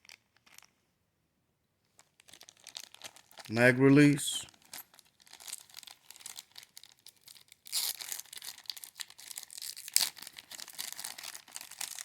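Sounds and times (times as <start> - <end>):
plastic packaging crinkling: 2.0 - 3.6, 4.5 - 12.0.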